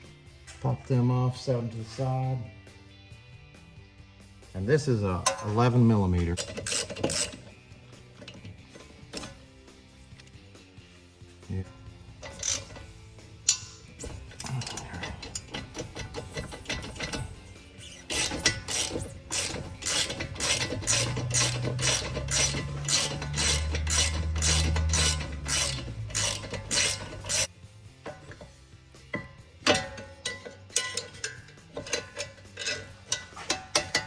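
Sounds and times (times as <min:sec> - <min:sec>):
hand ratchet clicking: 0:06.4 - 0:07.6, 0:12.2 - 0:27.5, 0:29.1 - 0:34.0.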